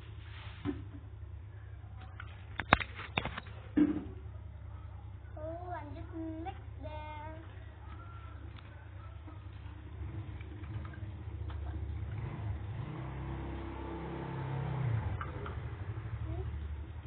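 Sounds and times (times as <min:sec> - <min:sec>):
vehicle engine passing by: 0:08.3 - 0:17.0.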